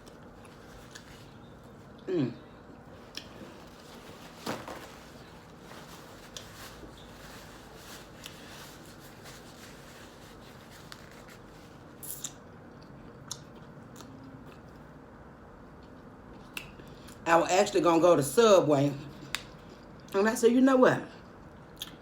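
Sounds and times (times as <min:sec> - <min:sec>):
person chewing a sandwich: 0:00.0 - 0:04.1.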